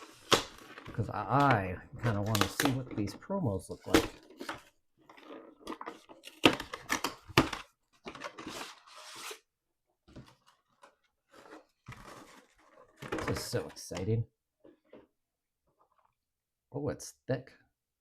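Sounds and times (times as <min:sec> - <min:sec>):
packaging ripping: 0:00.0 - 0:02.8.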